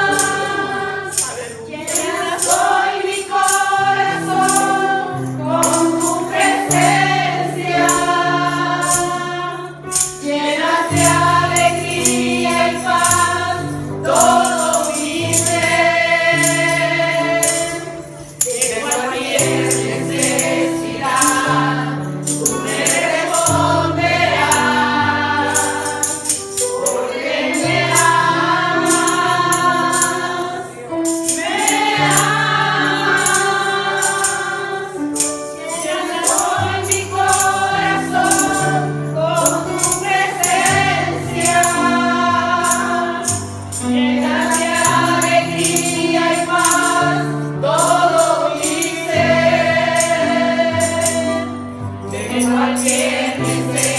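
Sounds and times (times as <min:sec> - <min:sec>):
group of voices singing: 0:00.0 - 0:53.9
percussion strikes: 0:00.0 - 0:53.9.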